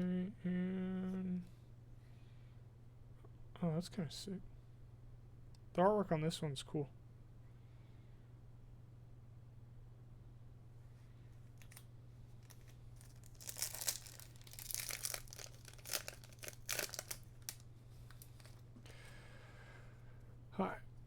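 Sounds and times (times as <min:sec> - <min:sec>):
low steady hum: 0:00.0 - 0:21.0
foil wrapper tearing and crinkling: 0:11.6 - 0:18.6.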